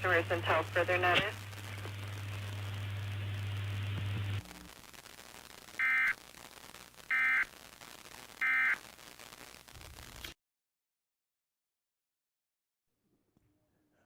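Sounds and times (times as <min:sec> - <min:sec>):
low hum with hiss: 0:00.0 - 0:09.0
buzzy digital data bursts: 0:01.4 - 0:10.3.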